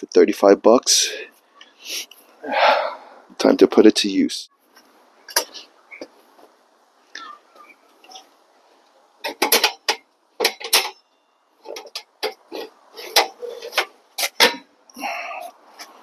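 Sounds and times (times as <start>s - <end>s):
workbench clicking and rattling: 9.2s - 11.0s.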